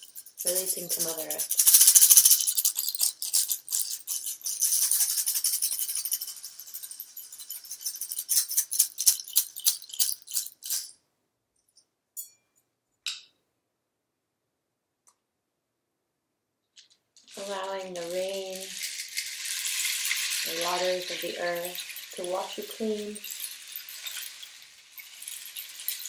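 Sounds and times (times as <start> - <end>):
shaker rattling: 0.0 - 11.0, 16.8 - 26.0.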